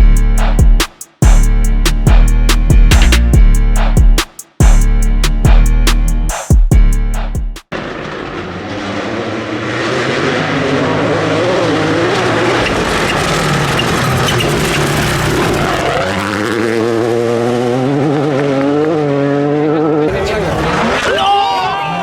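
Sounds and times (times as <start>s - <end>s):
rally car engine: 7.7s - 22.0s.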